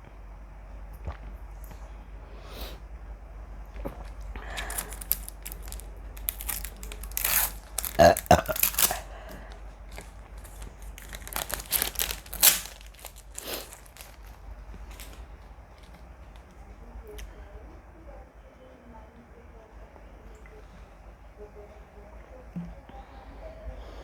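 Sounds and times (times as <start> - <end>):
plastic bottle crinkling: 3.8 - 16.4.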